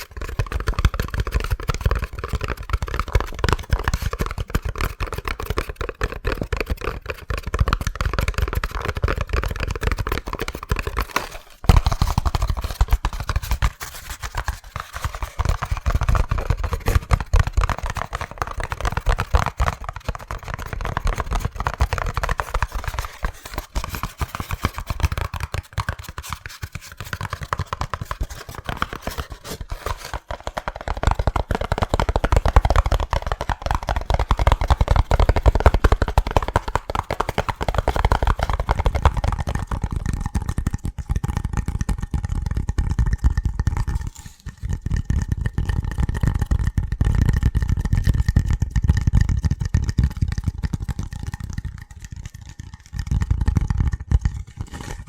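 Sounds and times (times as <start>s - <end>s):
rapid hand tapping: 0.0s - 42.2s.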